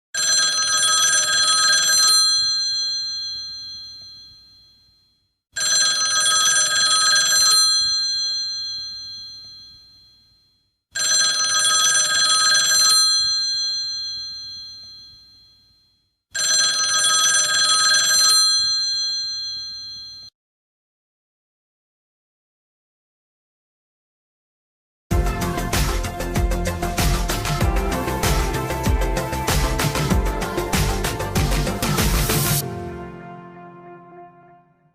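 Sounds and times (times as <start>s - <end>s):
telephone bell ringing: 0.2s - 20.3s.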